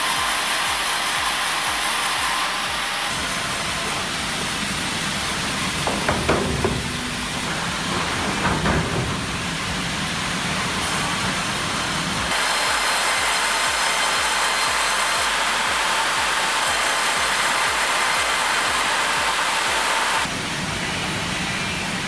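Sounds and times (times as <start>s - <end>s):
heavy machinery rumbling: 3.1s - 22.0s
machinery knocks: 4.3s - 12.3s.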